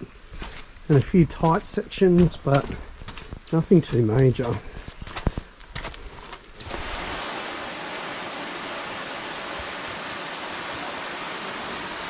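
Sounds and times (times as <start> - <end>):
waterfall rushing into pool: 6.6 - 12.0.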